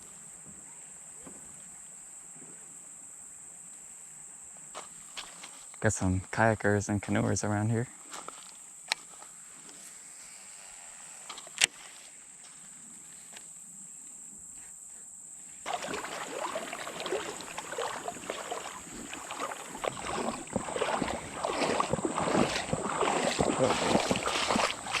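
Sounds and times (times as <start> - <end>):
footsteps on rocks and water: 8.1 - 9.4, 15.7 - 25.0.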